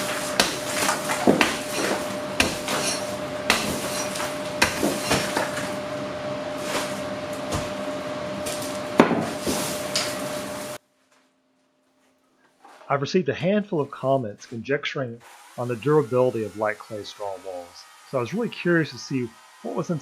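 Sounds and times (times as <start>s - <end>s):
knocks and crunches of wall: 0.0s - 5.7s.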